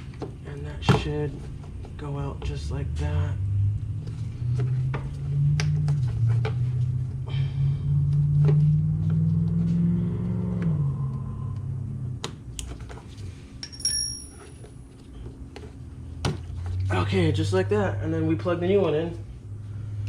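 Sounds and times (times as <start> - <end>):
low hum: 1.4 - 18.2
high metallic ping: 13.6 - 14.6.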